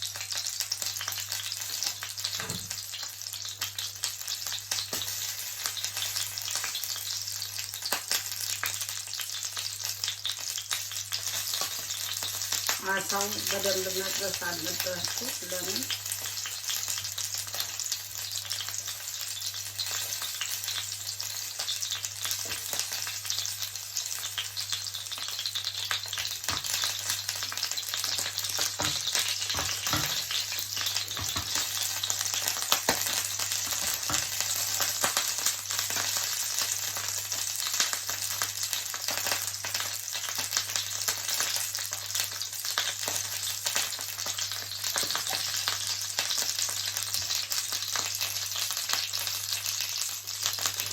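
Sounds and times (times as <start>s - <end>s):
fish sizzling in a frying pan: 0.0s - 50.9s.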